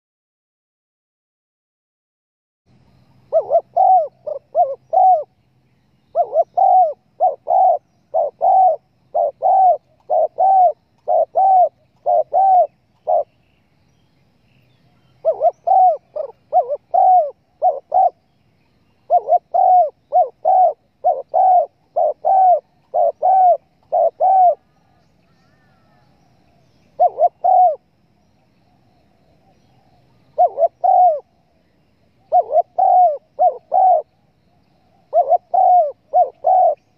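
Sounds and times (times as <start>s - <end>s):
dove cooing: 3.2s - 5.4s, 6.1s - 13.6s, 14.7s - 18.4s, 19.0s - 27.9s, 29.3s - 31.4s, 32.2s - 34.2s, 34.9s - 36.9s.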